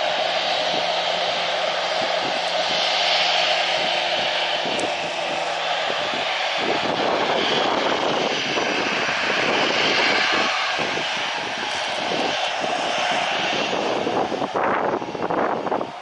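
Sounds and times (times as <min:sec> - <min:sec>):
jet engines roaring: 0:00.0 - 0:16.0
wind buffeting microphone: 0:00.0 - 0:16.0.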